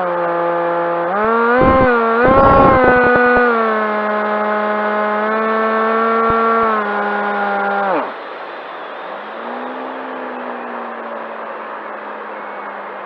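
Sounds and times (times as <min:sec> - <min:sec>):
electric motor propeller whine: 0:00.0 - 0:13.0.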